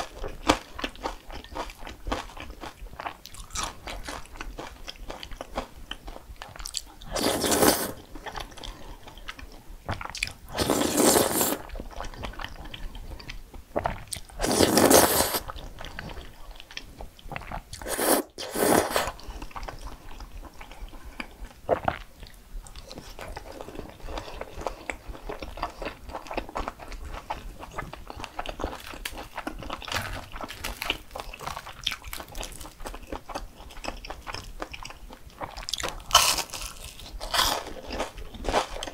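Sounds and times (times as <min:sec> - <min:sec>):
chewing with small clicks: 0:00.0 - 0:07.0, 0:19.2 - 0:38.9
crunching bites into crispy food: 0:28.7 - 0:32.9, 0:35.6 - 0:38.9.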